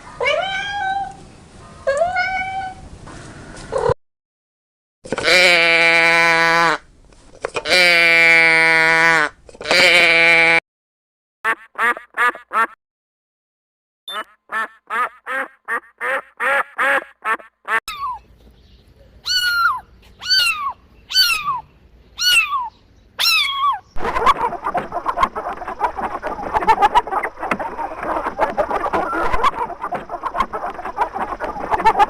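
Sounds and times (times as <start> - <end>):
duck quacking: 11.5 - 12.8, 14.1 - 17.8, 24.0 - 32.0
chickens clucking: 23.9 - 32.0.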